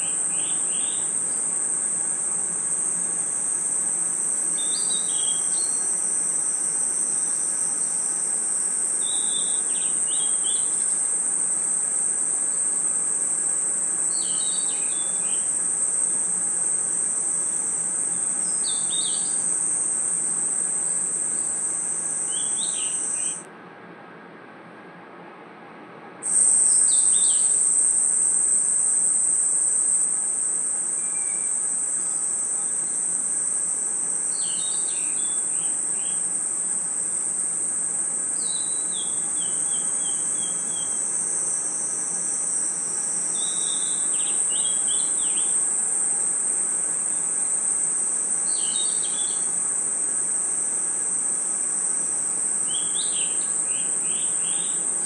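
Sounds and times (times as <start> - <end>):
crickets trilling: 0.0 - 23.5, 26.2 - 55.0.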